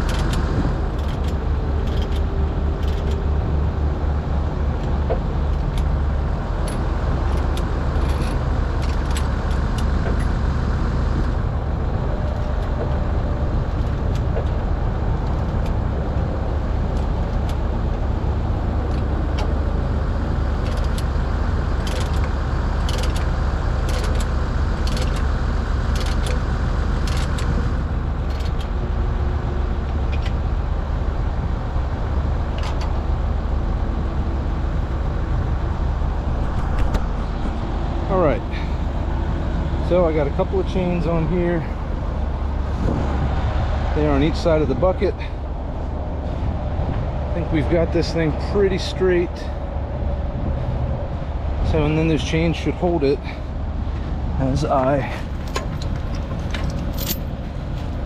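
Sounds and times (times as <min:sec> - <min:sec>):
diesel engine idling: 0:00.0 - 0:58.0
metallic chain clinks: 0:55.4 - 0:57.4.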